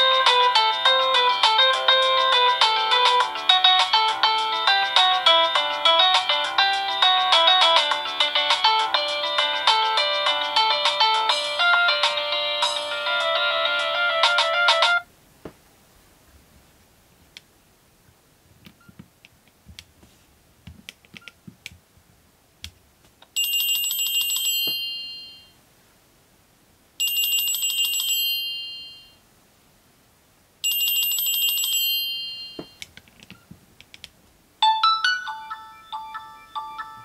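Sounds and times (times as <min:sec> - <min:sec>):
phone ringtone on loudspeaker: 0:23.4 - 0:25.5, 0:27.0 - 0:29.2, 0:30.6 - 0:32.8, 0:34.6 - 0:37.0.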